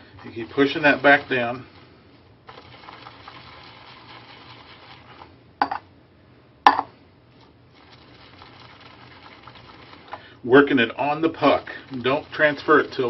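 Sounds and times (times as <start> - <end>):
shaving brush swishing lather: 0.0 - 5.2, 11.4 - 13.0.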